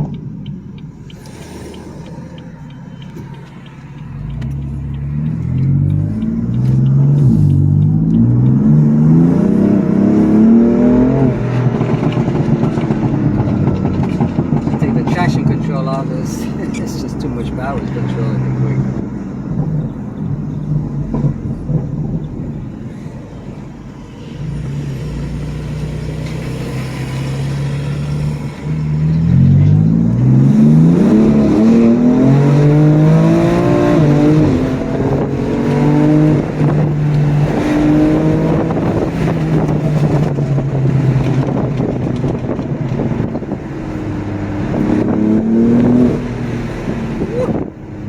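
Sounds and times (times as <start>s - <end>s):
car engine revving: 0.0s - 48.0s.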